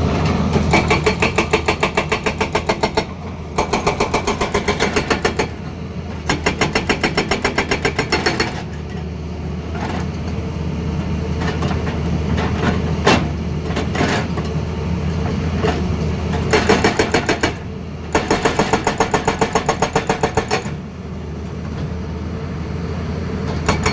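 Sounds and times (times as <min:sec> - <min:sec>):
excavator engine running: 0:00.0 - 0:23.9
hydraulic breaker hammering: 0:00.6 - 0:05.5, 0:16.5 - 0:20.7, 0:23.6 - 0:23.9.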